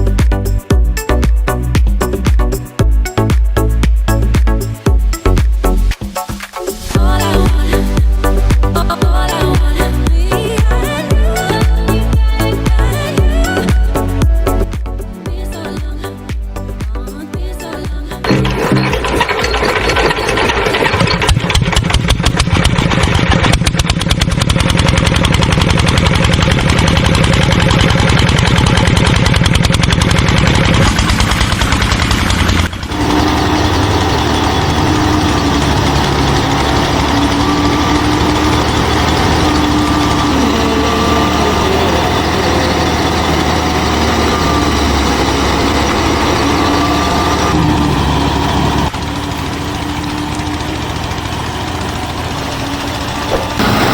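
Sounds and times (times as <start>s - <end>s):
small engine chugging: 6.8s - 14.1s, 18.1s - 53.9s.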